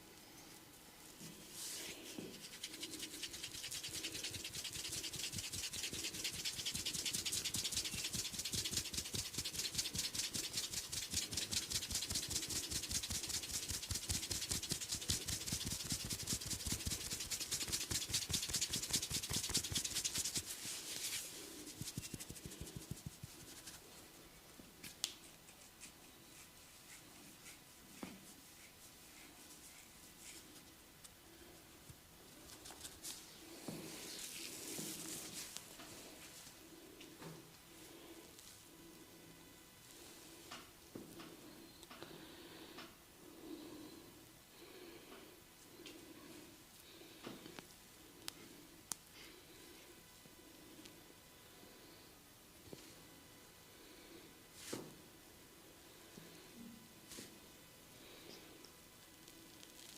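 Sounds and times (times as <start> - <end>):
hands rubbing hair: 1.4 - 24.0, 32.5 - 35.6.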